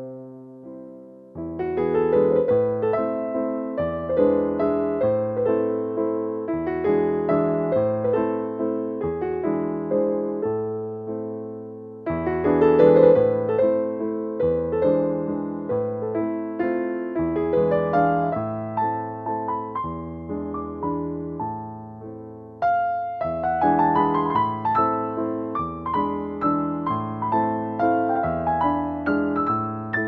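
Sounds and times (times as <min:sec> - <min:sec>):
piano music: 0:00.0 - 0:30.0.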